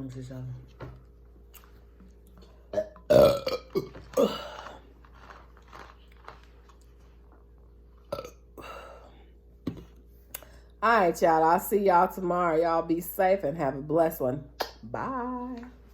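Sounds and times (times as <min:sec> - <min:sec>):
woman burping: 0:02.7 - 0:04.8, 0:08.1 - 0:09.1.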